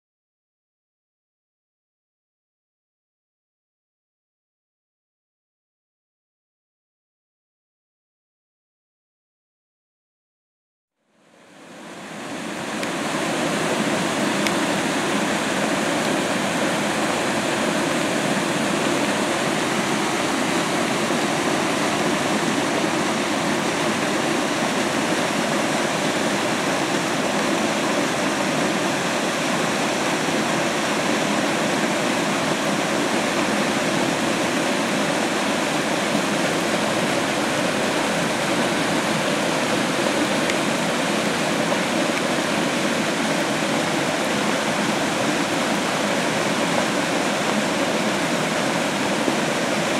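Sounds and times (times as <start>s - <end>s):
creek water rushing: 11.1s - 49.9s.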